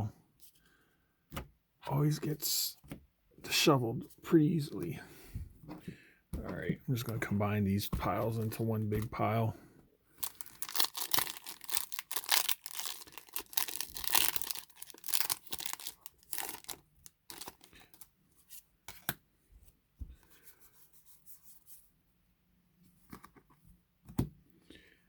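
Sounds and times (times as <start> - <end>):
foil pack torn open crinkling: 10.2 - 18.1.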